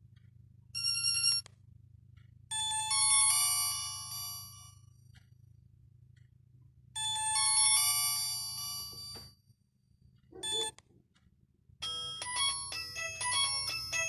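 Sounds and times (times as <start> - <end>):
phone ringtone melody: 11.8 - 14.0.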